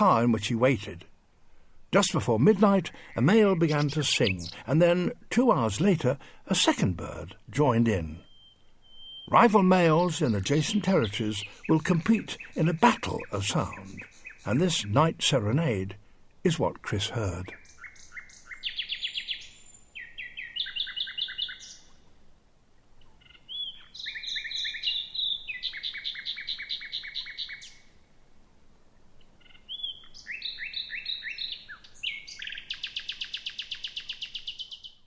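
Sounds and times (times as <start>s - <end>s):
nightingales singing: 0.0s - 1.0s, 2.0s - 22.0s, 23.1s - 28.0s, 29.2s - 35.0s.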